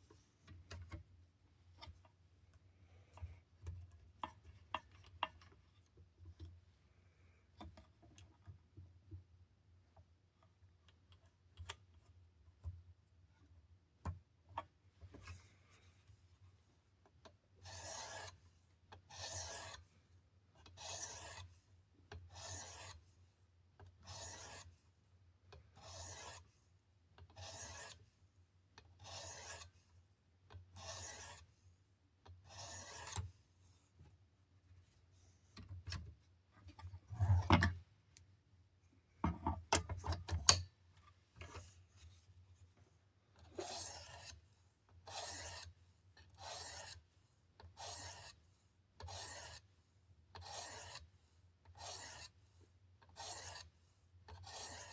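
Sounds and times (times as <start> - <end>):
knife scraping on sharpening stone: 22.4 - 22.9, 50.4 - 51.0, 54.4 - 54.9.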